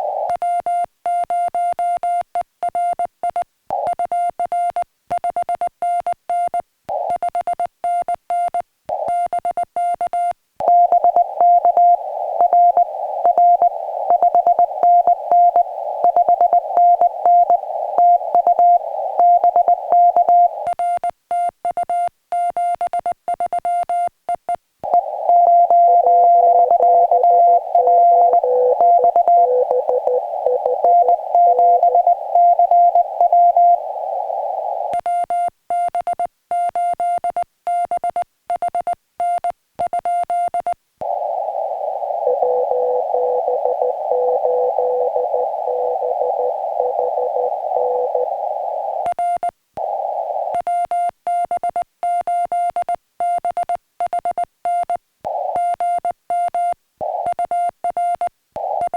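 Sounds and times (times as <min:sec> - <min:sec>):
receiver hiss: 0:00.0 - 0:01.8, 0:10.6 - 0:21.1, 0:24.8 - 0:36.0, 0:41.0 - 0:52.8, 0:55.2 - 0:58.9
morse code tones: 0:24.9 - 0:33.8, 0:42.1 - 0:51.5
lower morse tone: 0:41.0 - 0:49.0.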